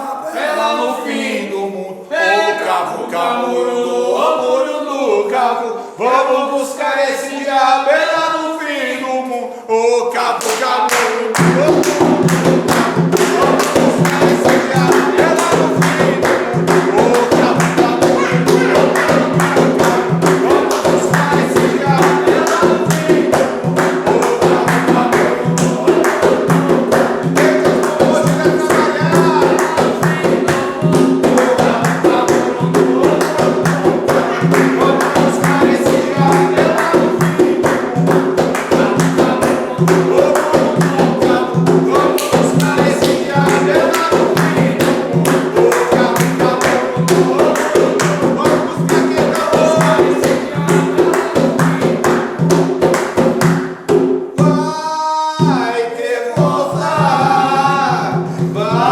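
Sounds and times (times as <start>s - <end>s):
group singing a chant: 0.0s - 58.9s
hand percussion with jingles: 11.4s - 53.8s.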